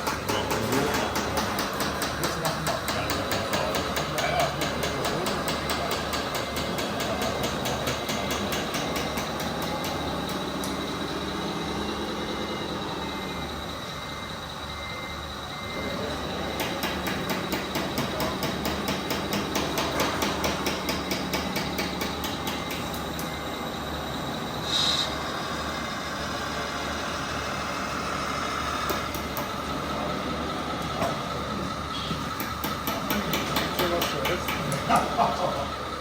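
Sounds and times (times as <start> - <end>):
steady high whine: 8.1 - 36.0.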